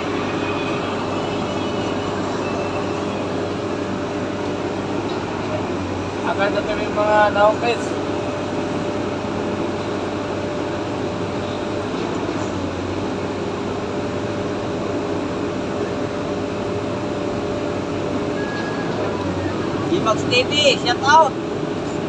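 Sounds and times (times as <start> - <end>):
faint steady tones: 0.0 - 9.2.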